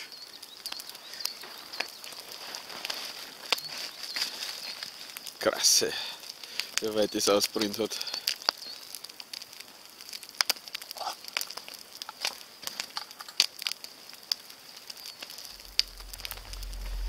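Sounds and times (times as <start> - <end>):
campfire crackling and popping: 0.0 - 17.0
low steady hum: 15.6 - 17.0.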